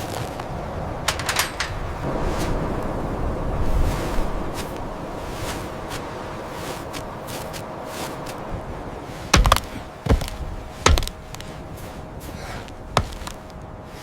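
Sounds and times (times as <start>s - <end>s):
steady background hiss: 0.0s - 14.0s
sharp knocks: 9.3s - 11.4s, 13.0s - 13.4s.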